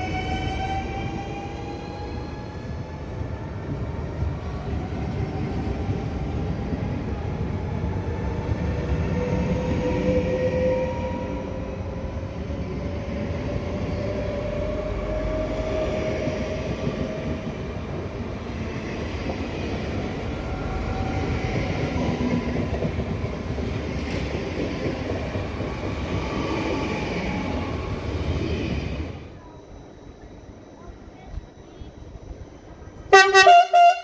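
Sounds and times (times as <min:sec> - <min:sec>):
train wheels on rails: 0:00.0 - 0:30.3.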